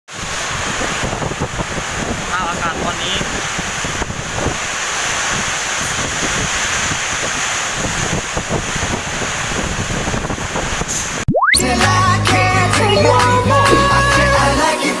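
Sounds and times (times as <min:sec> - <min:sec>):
wind buffeting microphone: 0:00.1 - 0:11.2
strong gusty wind: 0:00.1 - 0:11.3.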